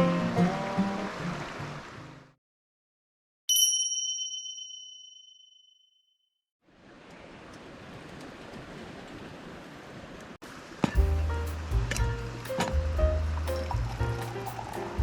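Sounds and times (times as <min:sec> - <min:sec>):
bright metallic ding: 0:03.5 - 0:05.9.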